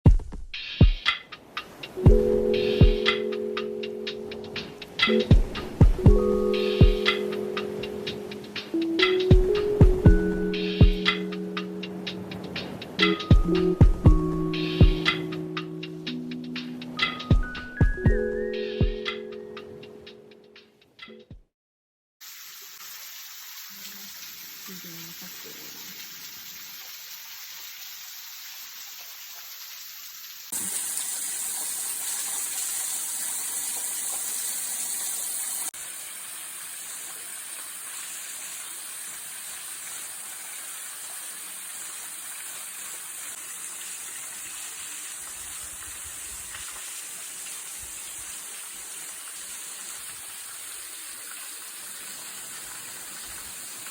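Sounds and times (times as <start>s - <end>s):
waterfall rushing: 1.6s - 17.8s.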